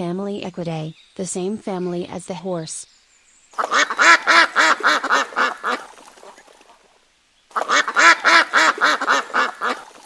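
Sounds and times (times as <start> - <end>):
duck quacking: 3.6 - 6.4, 7.5 - 10.0.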